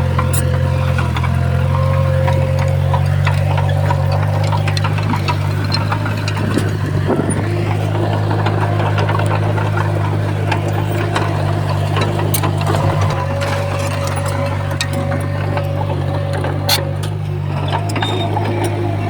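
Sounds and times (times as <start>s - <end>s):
heavy diesel engine running: 0.0s - 19.0s
sharp clicks and knocks: 0.0s - 19.0s.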